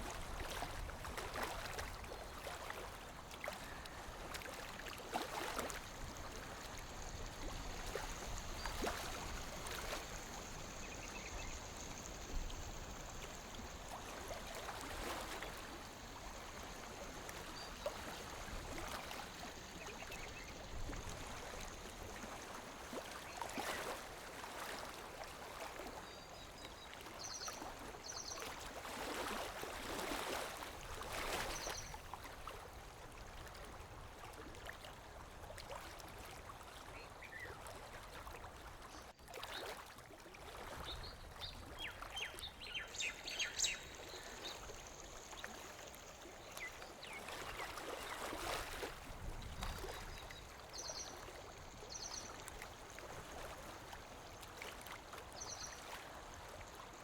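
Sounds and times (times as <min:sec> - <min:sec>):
lake water lapping at shore: 0:00.0 - 0:57.0.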